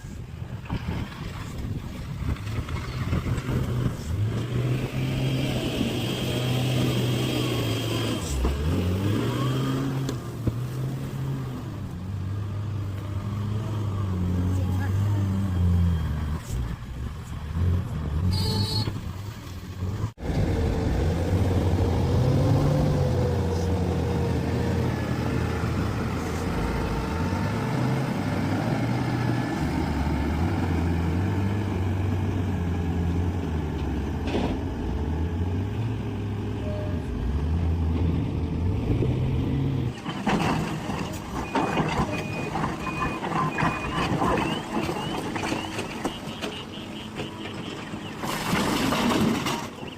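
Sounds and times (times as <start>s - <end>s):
heavy diesel machinery running: 36.3s - 49.9s
reversing alarm beeping: 41.4s - 47.7s.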